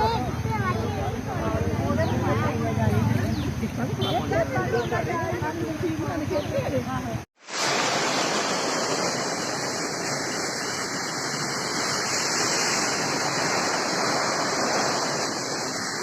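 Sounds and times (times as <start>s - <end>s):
floodwater rushing: 7.4s - 16.0s.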